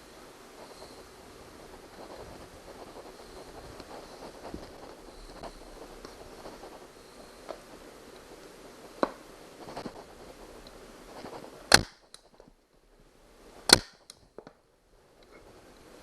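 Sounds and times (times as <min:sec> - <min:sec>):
staple gun snaps: 0:11.7 - 0:12.2, 0:13.7 - 0:14.2.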